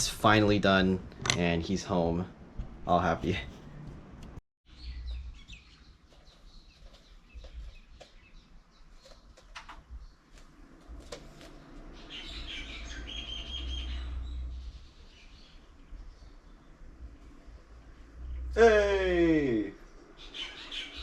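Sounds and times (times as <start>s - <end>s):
birds chirping: 4.7s - 21.0s
low rumble: 10.5s - 18.6s.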